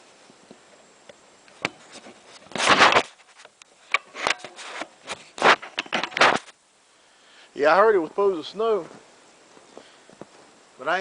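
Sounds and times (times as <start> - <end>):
camera handling noise: 1.6 - 6.6.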